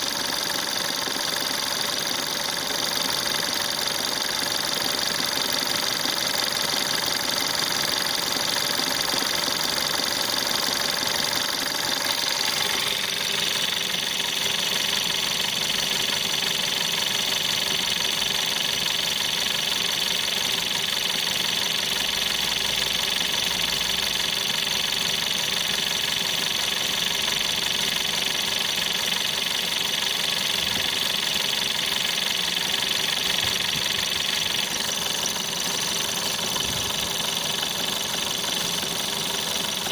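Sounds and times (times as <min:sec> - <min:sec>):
car engine idling: 0:00.0 - 0:20.8, 0:21.6 - 0:39.9
rhythmic engine knocking: 0:00.0 - 0:39.9.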